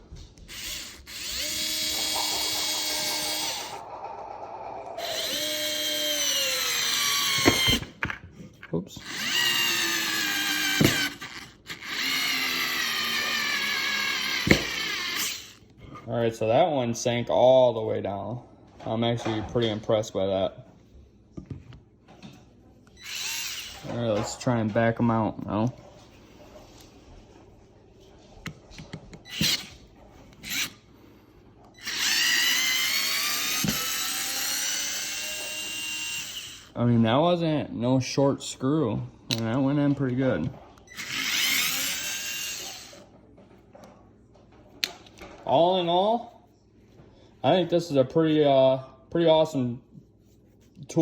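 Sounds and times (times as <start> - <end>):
cordless screwdriver motor whining: 0.4 - 3.8, 5.0 - 8.0, 9.0 - 15.6, 22.9 - 23.9, 29.3 - 30.8, 31.8 - 36.8, 40.9 - 43.0.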